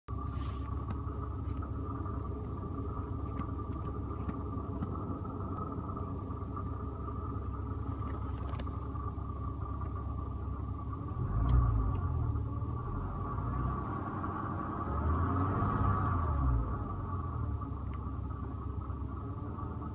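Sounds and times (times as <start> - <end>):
car engine running: 0.1 - 19.9
low engine rumble: 0.1 - 19.9
engine tapping knocking noise: 0.8 - 10.2.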